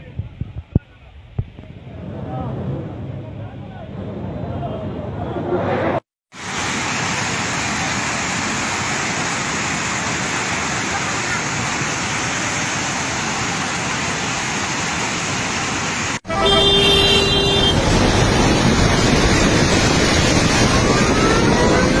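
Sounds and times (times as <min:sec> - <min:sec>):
floodwater rushing: 0:06.3 - 0:22.0
vehicle horn: 0:16.2 - 0:18.0.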